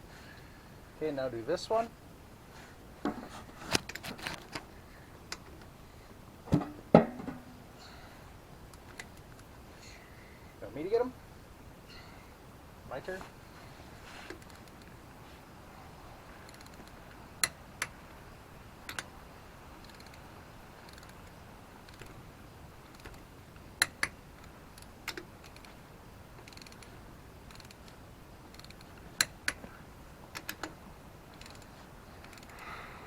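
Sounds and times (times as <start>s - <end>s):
torque wrench clicks: 26.4s - 26.9s, 31.4s - 32.6s.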